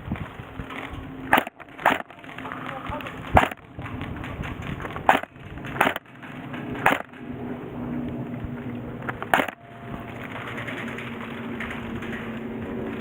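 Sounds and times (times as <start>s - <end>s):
low hum: 0.0s - 13.0s
sharp snaps or knocks: 6.8s - 7.1s.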